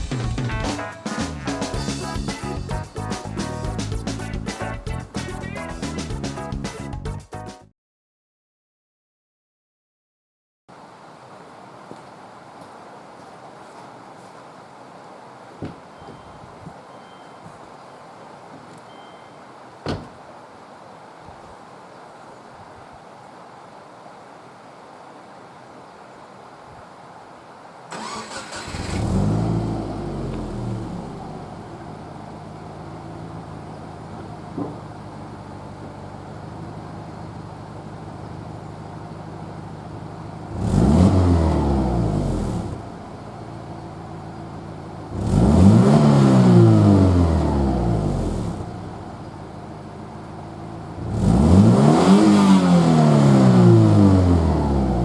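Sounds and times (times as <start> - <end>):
car engine starting and revving: 27.9 - 55.0.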